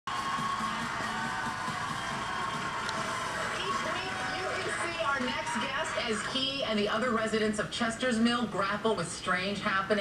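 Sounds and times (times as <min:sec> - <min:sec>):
music: 0:00.1 - 0:05.0
studio audience cheering: 0:00.1 - 0:07.2.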